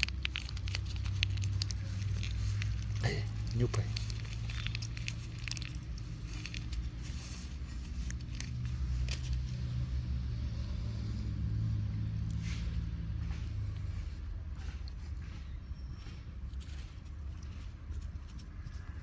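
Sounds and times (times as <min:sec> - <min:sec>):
faint clicks and crackles: 0:00.0 - 0:09.9
low engine hum: 0:00.0 - 0:19.0.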